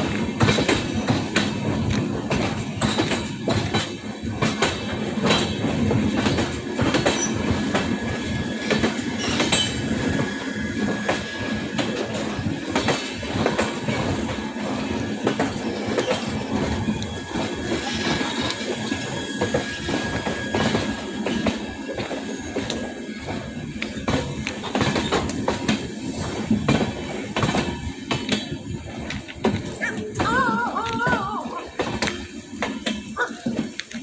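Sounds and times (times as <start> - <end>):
train rumble: 0.0 - 34.0
wheels clacking over rail joints: 0.0 - 34.0
wheel squeal: 15.7 - 21.8.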